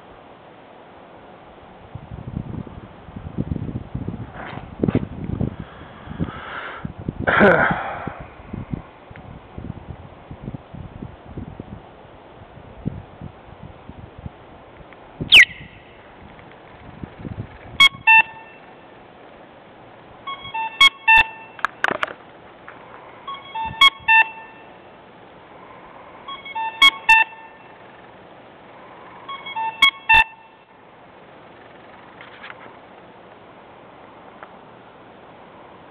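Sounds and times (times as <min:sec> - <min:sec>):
falling whistle: 0:15.3 - 0:15.8, 0:26.3 - 0:27.6, 0:29.3 - 0:30.4
short electronic beeps: 0:17.8 - 0:18.7, 0:20.3 - 0:21.6, 0:23.2 - 0:24.8, 0:26.2 - 0:28.0, 0:29.2 - 0:30.8.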